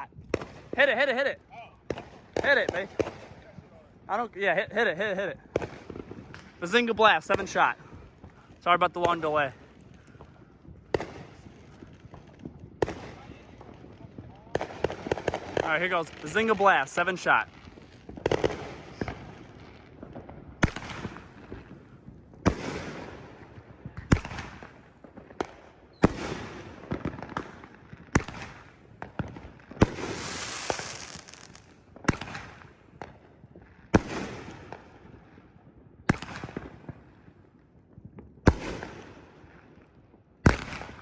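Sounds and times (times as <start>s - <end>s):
firework bangs: 0.0s - 3.8s, 5.0s - 35.2s, 38.4s - 39.3s, 40.4s - 41.0s
firework crackle: 0.2s - 33.3s
hissing crackle: 29.9s - 31.8s.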